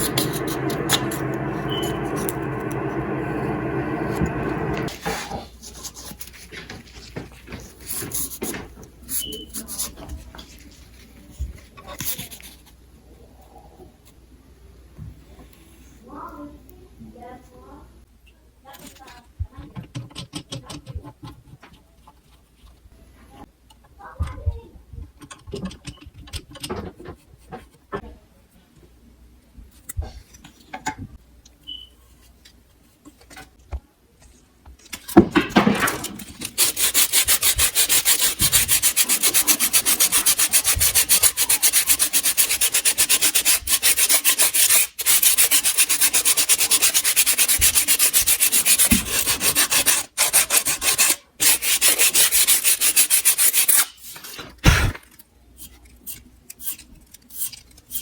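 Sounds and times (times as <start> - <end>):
fast rasping rubbing: 36.4 - 53.9.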